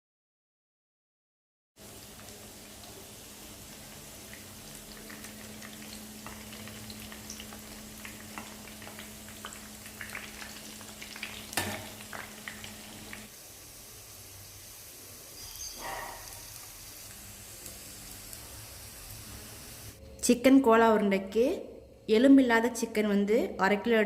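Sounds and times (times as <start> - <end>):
food frying in hot oil: 1.8 - 20.0.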